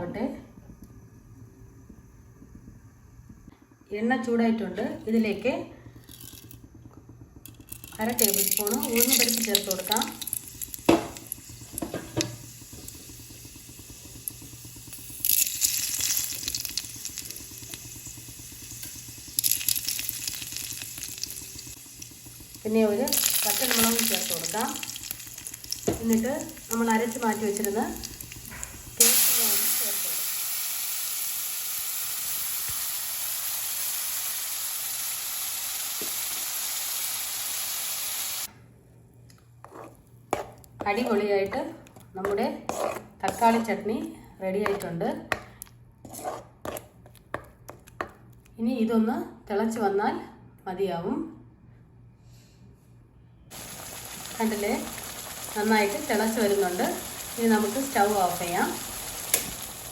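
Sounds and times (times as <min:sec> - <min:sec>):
sizzling in hot oil: 0:06.0 - 0:38.5, 0:53.5 - 0:59.9.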